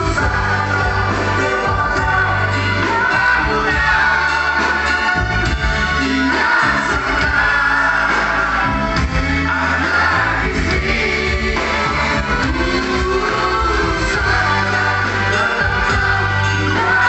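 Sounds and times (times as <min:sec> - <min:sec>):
live band playing: 0:00.0 - 0:17.0
person singing: 0:00.0 - 0:17.0.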